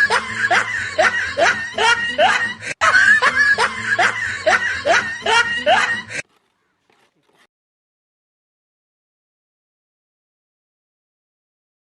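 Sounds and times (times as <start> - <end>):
person laughing: 0.0 - 6.3.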